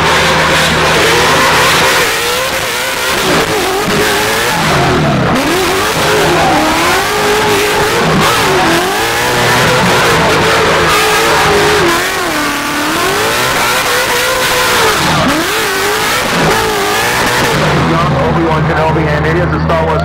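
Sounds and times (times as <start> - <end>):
race car engine revving: 0.0 - 20.0.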